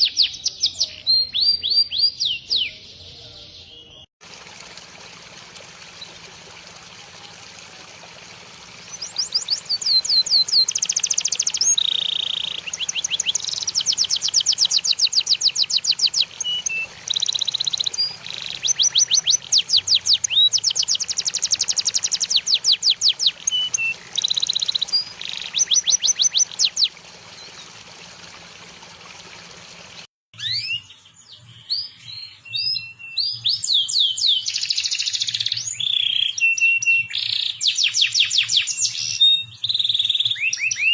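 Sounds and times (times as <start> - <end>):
songbird trills and buzzy phrases: 0.0 - 4.1, 5.8 - 27.9.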